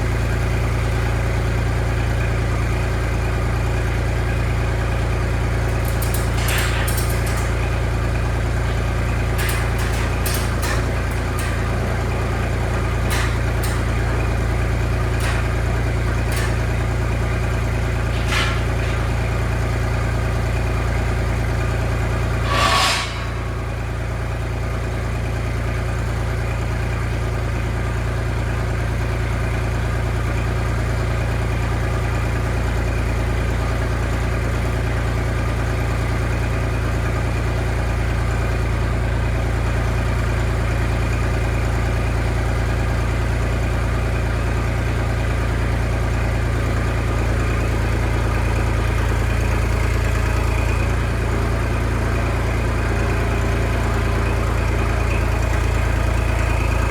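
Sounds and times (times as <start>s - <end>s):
engine idling: 0.0s - 56.9s
rasping burst: 22.4s - 24.2s.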